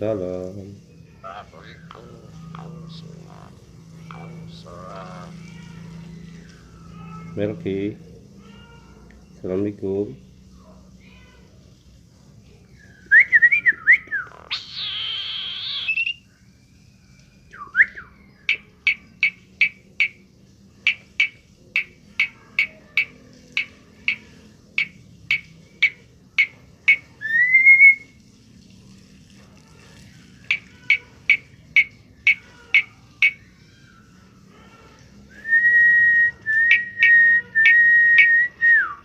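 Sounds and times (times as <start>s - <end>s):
harsh raspy bird call: 1.1s - 7.6s, 14.0s - 16.2s, 18.1s - 20.2s, 20.8s - 28.1s, 29.7s - 35.1s, 36.6s - 39.0s
bird whistling and chirping: 12.8s - 16.3s, 17.5s - 20.2s, 24.8s - 28.2s, 35.3s - 39.0s.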